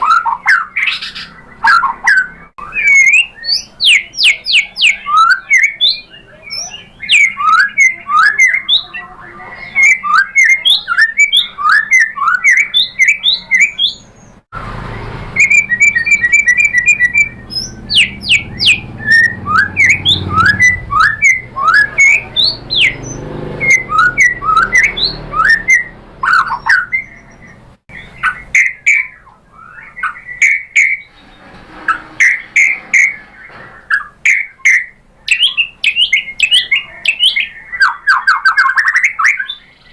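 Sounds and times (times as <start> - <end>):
bird singing whistled notes: 0.0 - 31.4, 32.2 - 39.9.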